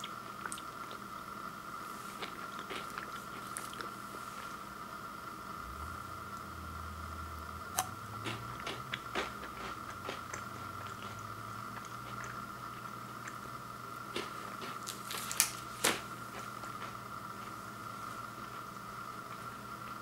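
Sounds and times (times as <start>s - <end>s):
faint steady hum: 0.0s - 20.0s
chewing crisp wafer bar: 2.0s - 4.6s, 7.8s - 17.6s.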